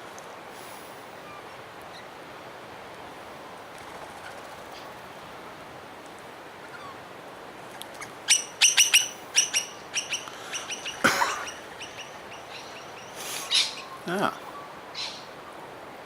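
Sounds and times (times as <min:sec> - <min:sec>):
birds chirping: 0:08.0 - 0:15.8.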